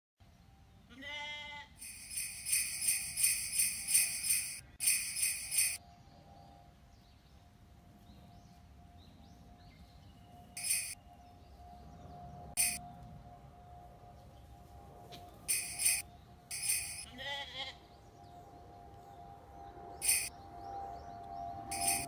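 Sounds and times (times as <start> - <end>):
goat bleat: 0.9 - 1.8, 17.1 - 17.8
jingling bells shaking: 1.8 - 5.8, 10.6 - 11.0, 12.6 - 12.8, 15.5 - 17.1, 20.0 - 20.3, 21.7 - 22.0.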